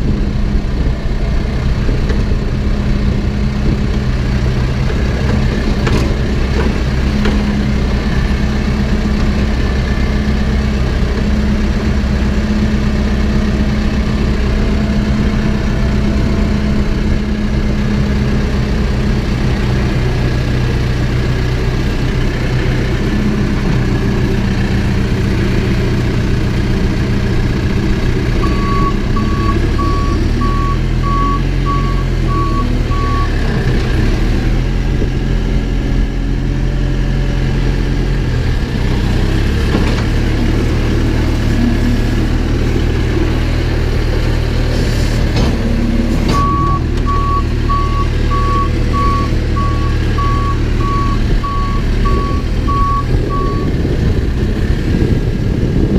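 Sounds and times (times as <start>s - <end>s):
backhoe diesel engine running: 0.0s - 55.9s
backup alarm beeps: 28.4s - 33.3s, 46.3s - 53.7s.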